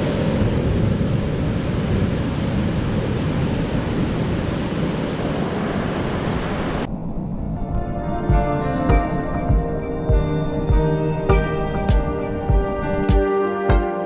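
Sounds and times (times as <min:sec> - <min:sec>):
wind buffeting microphone: 0:00.0 - 0:13.1
ocean surf washing in: 0:00.0 - 0:13.6
soft ambient music: 0:07.6 - 0:14.0.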